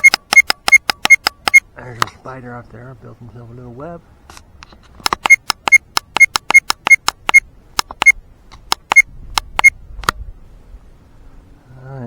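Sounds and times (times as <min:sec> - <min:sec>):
sharp ringing clicks: 0:00.0 - 0:01.7, 0:05.1 - 0:10.2.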